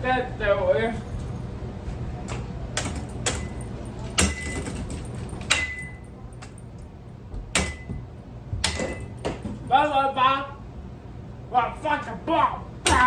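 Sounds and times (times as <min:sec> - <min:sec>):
metal clanks and knocks: 0:02.7 - 0:06.7, 0:07.4 - 0:09.7.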